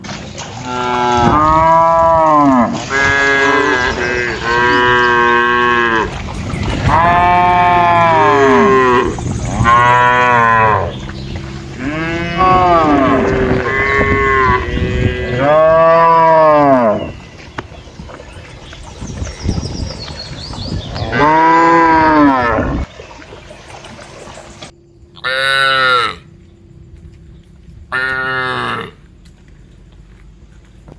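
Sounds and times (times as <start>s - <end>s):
cattle mooing: 0.6s - 17.1s, 21.0s - 22.8s, 25.2s - 26.3s, 27.9s - 29.0s.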